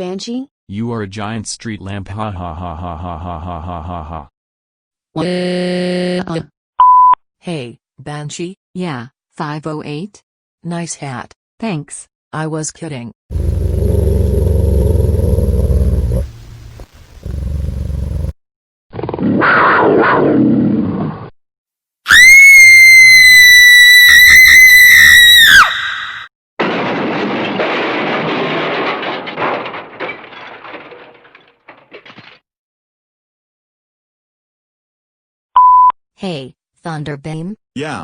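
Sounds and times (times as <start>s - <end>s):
low rumbling roar: 13.3s - 18.3s
hissing noise: 15.4s - 18.3s.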